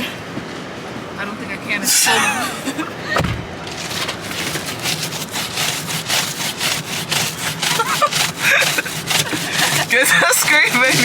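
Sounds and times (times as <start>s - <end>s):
scraping ice off windshield: 3.6s - 11.0s.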